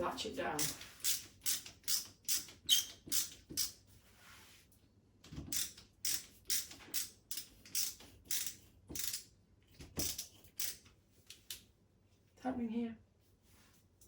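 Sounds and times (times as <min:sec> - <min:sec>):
screwdriver rasping scrape: 0:00.6 - 0:03.8.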